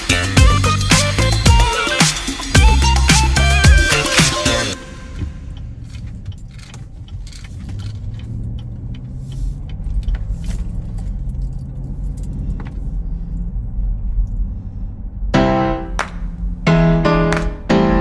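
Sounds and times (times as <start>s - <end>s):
car road and engine rumble: 0.0s - 18.0s
light rattling clicks: 5.5s - 12.8s.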